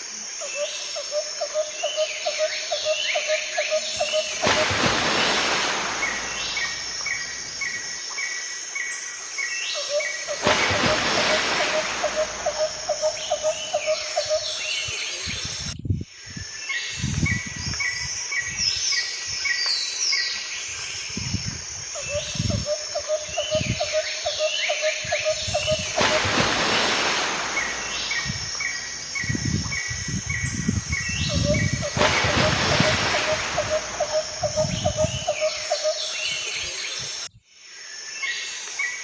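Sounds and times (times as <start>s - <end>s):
birds chirping: 3.7s - 7.9s, 9.9s - 15.0s, 25.2s - 36.7s
hiss and low rumble: 25.5s - 35.2s.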